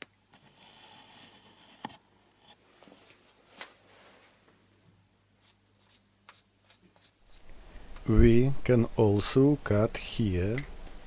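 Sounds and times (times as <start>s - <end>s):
soft rustle: 2.6s - 4.7s.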